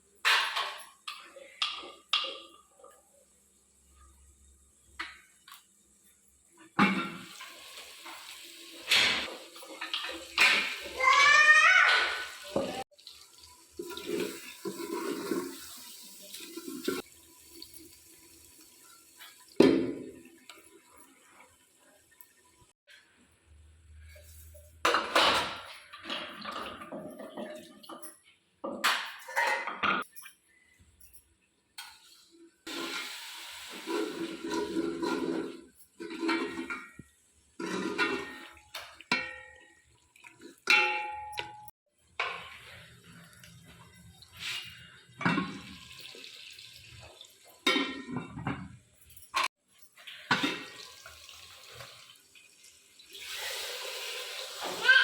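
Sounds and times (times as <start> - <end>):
water pouring and sloshing: 6.7 - 22.8, 25.4 - 28.2, 31.9 - 41.4, 42.1 - 55.0.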